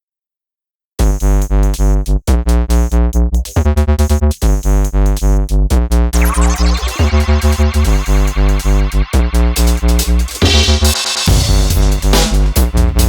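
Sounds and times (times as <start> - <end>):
electronic music with synth chords: 6.2 - 13.0.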